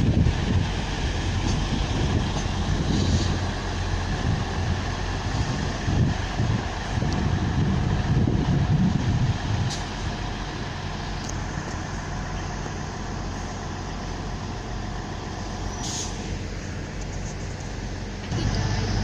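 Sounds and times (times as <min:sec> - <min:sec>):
train mechanical hum: 0:00.0 - 0:19.0
air brake hisses: 0:15.7 - 0:16.4.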